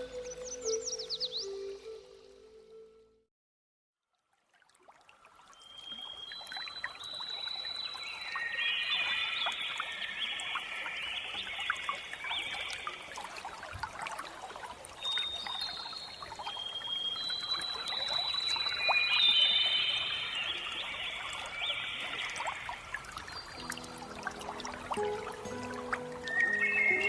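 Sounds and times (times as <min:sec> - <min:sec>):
water trickling and bubbling: 0:04.3 - 0:27.0.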